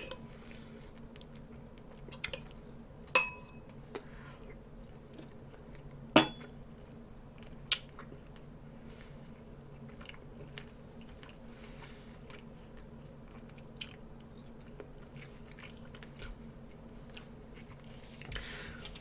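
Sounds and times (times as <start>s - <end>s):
cutlery clinking against dishes: 0.0s - 0.2s, 2.1s - 2.5s, 3.2s - 3.6s, 6.2s - 6.5s.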